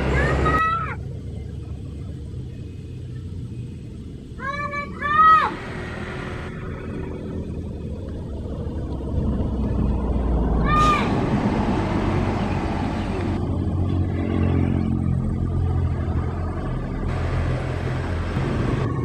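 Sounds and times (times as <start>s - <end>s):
bus engine droning: 0.0s - 19.0s
road traffic: 0.0s - 19.0s.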